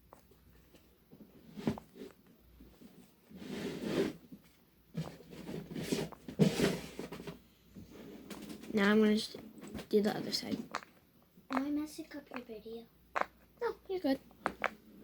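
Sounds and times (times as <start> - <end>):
fidget toy rubbing and rustling: 1.4 - 4.4, 5.0 - 10.8.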